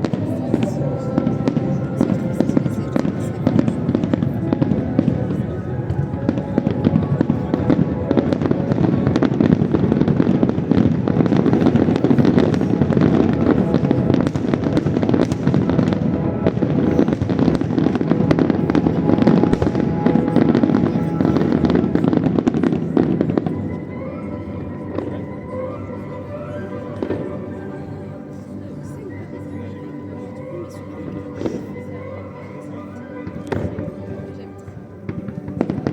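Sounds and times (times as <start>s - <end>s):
fireworks bangs and crackles: 0.0s - 26.0s, 27.0s - 27.5s, 33.3s - 33.9s, 35.0s - 35.9s
music: 0.0s - 35.9s.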